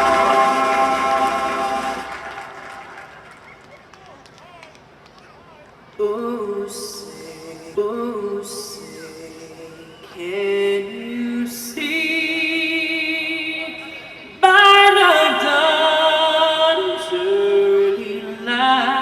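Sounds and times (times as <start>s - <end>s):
woman singing long held notes: 6.0s - 13.4s.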